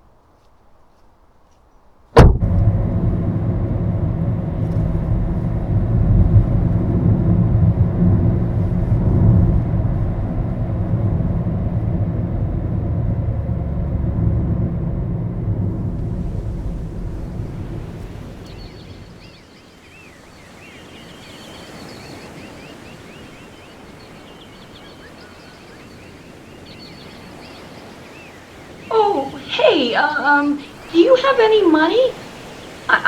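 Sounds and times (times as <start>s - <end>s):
car engine and road noise: 2.2s - 19.4s.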